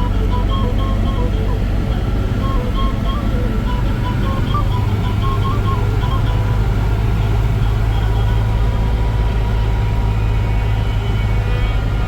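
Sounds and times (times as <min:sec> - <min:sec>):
short high-pitched melody: 0:00.0 - 0:06.8
vehicle engine rumbling: 0:00.0 - 0:12.0.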